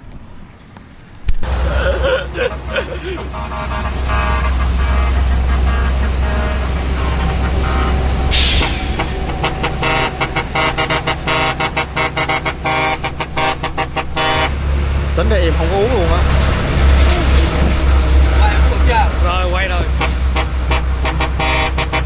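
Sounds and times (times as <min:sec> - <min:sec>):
diesel engine rumble: 0:00.0 - 0:22.0
truck horn tooting: 0:01.4 - 0:22.0
air hiss: 0:08.0 - 0:10.9.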